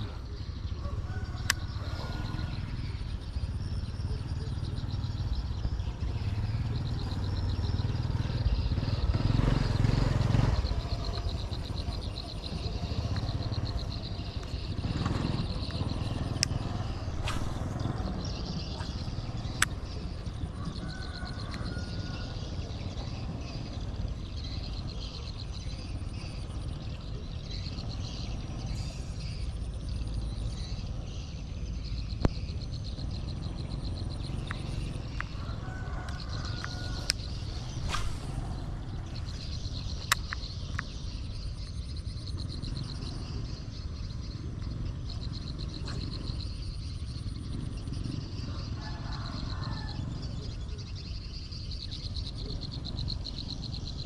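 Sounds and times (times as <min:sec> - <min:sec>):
insects trilling: 0:00.0 - 0:54.0
steady low rumble: 0:10.2 - 0:54.0
sharp clicks: 0:39.8 - 0:40.9.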